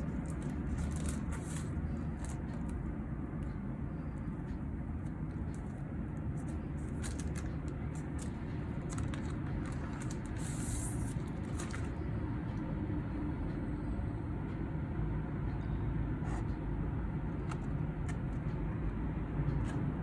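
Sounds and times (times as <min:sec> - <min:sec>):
vinyl record packaging rustling: 0:00.0 - 0:02.8, 0:06.4 - 0:12.0.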